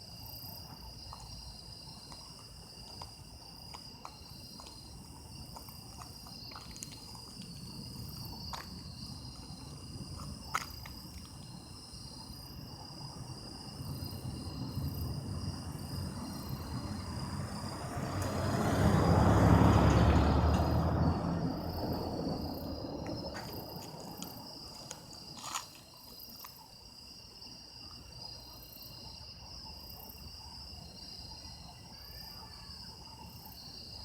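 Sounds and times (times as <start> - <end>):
crickets trilling: 0.0 - 34.0
passing vehicle rumble: 13.7 - 25.4.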